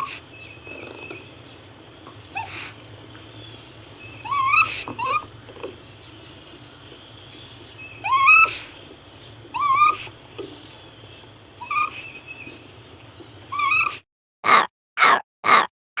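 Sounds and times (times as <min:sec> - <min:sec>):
raccoon breathy bursts: 0:00.0 - 0:01.1, 0:02.3 - 0:02.8, 0:04.3 - 0:05.3, 0:08.1 - 0:08.8
raccoon squealing cries: 0:00.0 - 0:01.2, 0:02.3 - 0:02.8, 0:04.1 - 0:05.8, 0:08.0 - 0:08.8, 0:09.4 - 0:10.2, 0:11.6 - 0:12.1, 0:13.5 - 0:15.7
background hum: 0:00.0 - 0:14.0.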